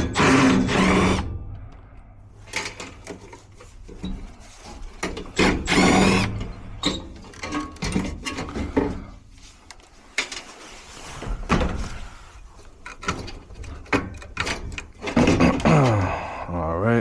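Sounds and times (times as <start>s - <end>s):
tools and metal parts knocking: 5.0s - 9.2s, 12.8s - 15.7s.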